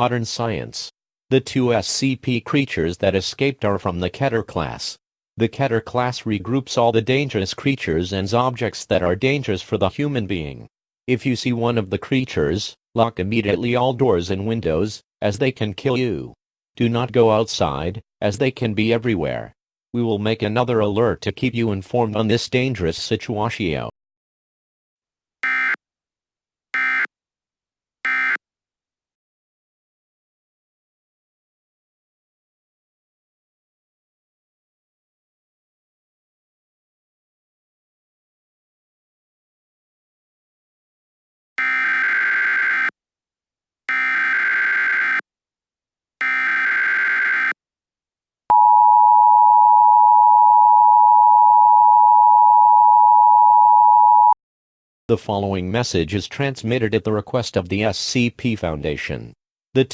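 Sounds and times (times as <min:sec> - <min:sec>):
buzzy digital data tones: 0:25.4 - 0:25.8, 0:26.8 - 0:27.1, 0:28.1 - 0:28.4, 0:41.6 - 0:42.9, 0:43.9 - 0:45.2, 0:46.2 - 0:47.5.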